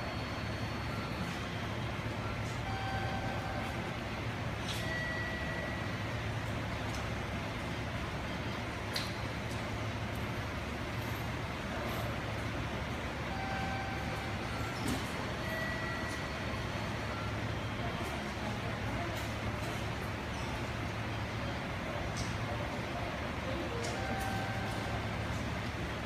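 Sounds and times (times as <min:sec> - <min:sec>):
diesel railcar idling: 0:00.0 - 0:26.0.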